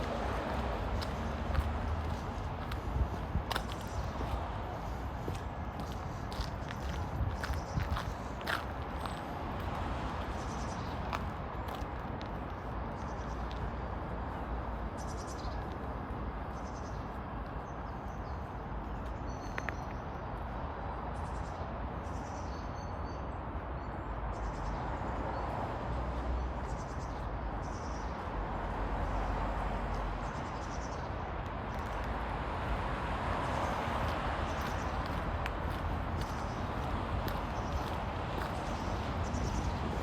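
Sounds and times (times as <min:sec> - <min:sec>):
wind buffeting microphone: 0:00.0 - 0:09.0
faint footsteps: 0:00.0 - 0:09.8, 0:34.0 - 0:40.0.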